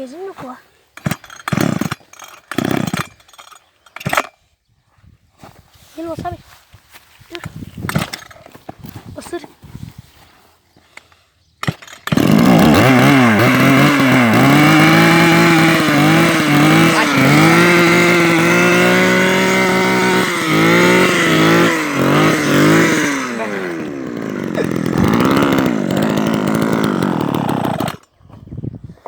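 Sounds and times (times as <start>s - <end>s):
small engine revving: 1.0s - 3.2s, 11.6s - 28.1s.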